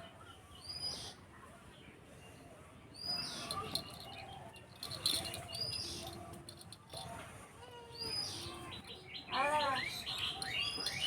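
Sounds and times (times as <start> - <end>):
small birds chirping: 3.0 - 7.0, 8.0 - 11.0.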